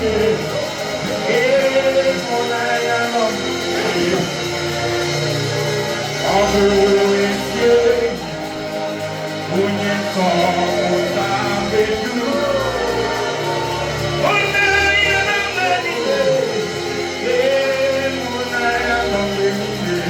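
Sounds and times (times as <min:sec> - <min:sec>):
gospel band playing: 0:00.0 - 0:20.0
person singing held sliding notes: 0:00.0 - 0:20.0.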